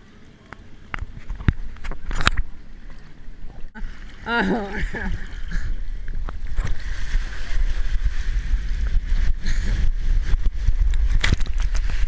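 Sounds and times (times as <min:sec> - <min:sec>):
rushing water: 0:00.0 - 0:12.0
wind buffeting microphone: 0:04.8 - 0:12.0.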